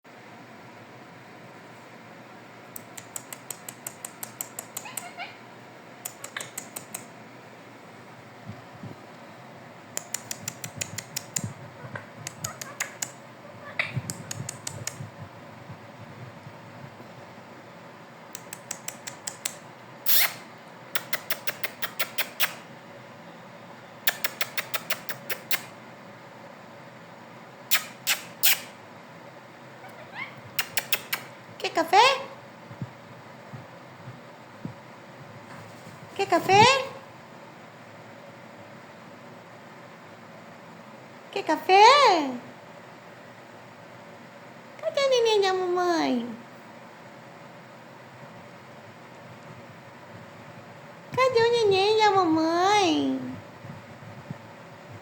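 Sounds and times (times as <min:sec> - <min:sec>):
parakeet clicking: 0:02.7 - 0:05.2, 0:06.0 - 0:07.1, 0:10.0 - 0:11.5, 0:12.2 - 0:13.2, 0:14.1 - 0:15.0, 0:18.4 - 0:20.3, 0:21.0 - 0:22.6, 0:30.6 - 0:31.3
squeaky chirps: 0:20.1 - 0:20.4.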